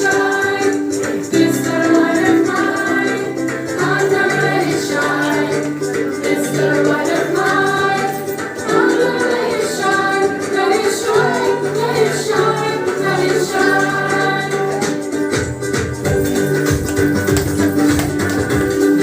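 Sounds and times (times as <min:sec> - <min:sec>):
choir singing: 0:00.0 - 0:15.0
instrumental accompaniment: 0:00.0 - 0:19.0.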